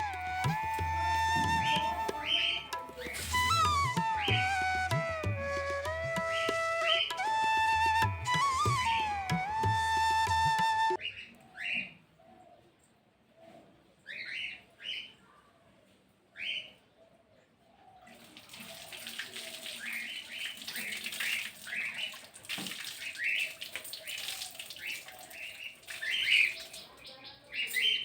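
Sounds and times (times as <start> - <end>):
running splashing water: 0.0 - 10.9, 18.1 - 27.2
birds chirping: 22.9 - 28.0.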